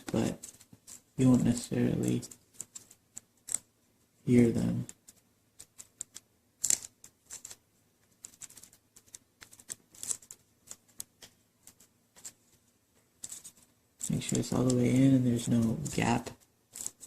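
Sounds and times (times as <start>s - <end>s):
small clicks and taps: 4.8s - 15.0s.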